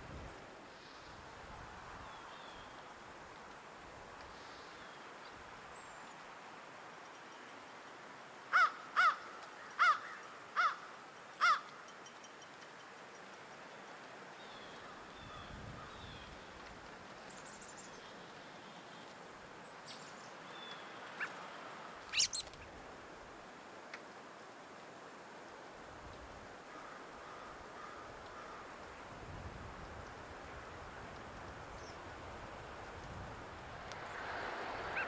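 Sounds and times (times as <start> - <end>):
crow cawing: 8.5 - 11.7, 26.7 - 28.8
small birds chirping: 14.4 - 22.7.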